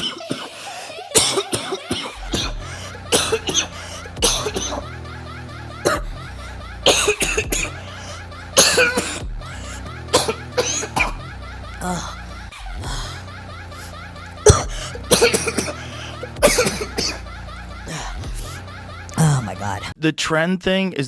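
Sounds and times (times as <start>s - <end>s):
person coughing harshly: 0.0s - 4.9s, 5.8s - 6.2s, 6.8s - 12.2s, 14.4s - 17.3s, 19.2s - 19.9s
music with low beat: 2.2s - 11.8s, 12.4s - 19.9s.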